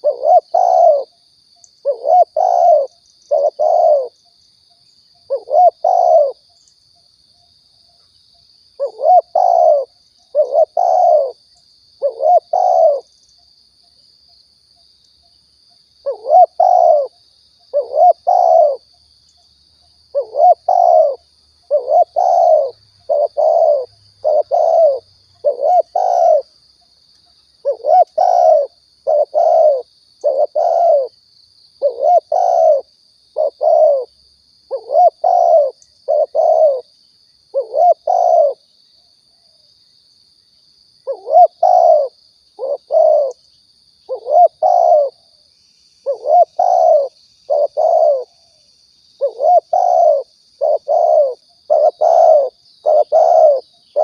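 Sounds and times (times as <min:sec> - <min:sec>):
dove cooing: 0:00.0 - 0:01.1, 0:01.8 - 0:04.2, 0:05.3 - 0:06.4, 0:08.8 - 0:11.4, 0:12.0 - 0:13.1, 0:16.0 - 0:18.9, 0:20.1 - 0:26.5, 0:27.6 - 0:31.2, 0:31.8 - 0:34.1, 0:34.7 - 0:36.9, 0:37.5 - 0:38.7, 0:41.0 - 0:43.4, 0:44.1 - 0:45.2, 0:46.0 - 0:48.6, 0:49.2 - 0:54.0.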